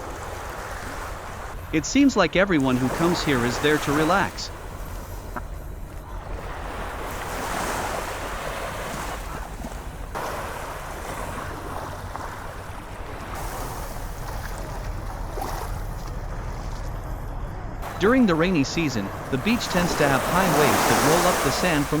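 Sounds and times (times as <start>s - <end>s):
sea waves washing onto sand: 17.8s - 22.0s.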